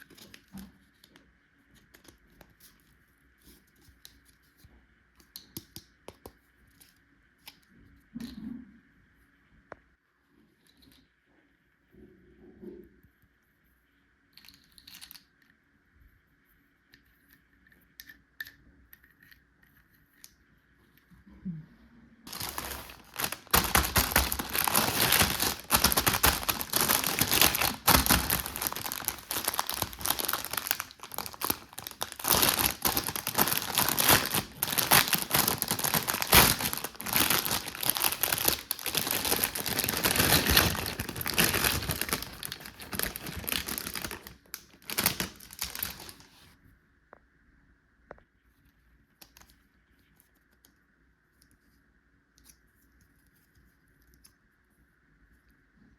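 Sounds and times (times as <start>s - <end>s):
plastic packaging crinkling: 22.3s - 46.4s.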